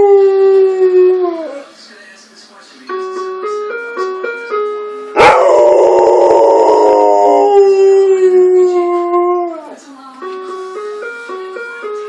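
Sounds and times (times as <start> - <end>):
dog howling: 5.2 - 9.6.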